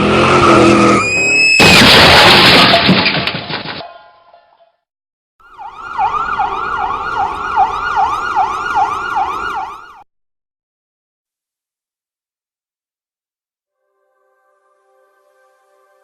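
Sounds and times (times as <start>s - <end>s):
emergency siren yelping: 5.4s - 10.1s.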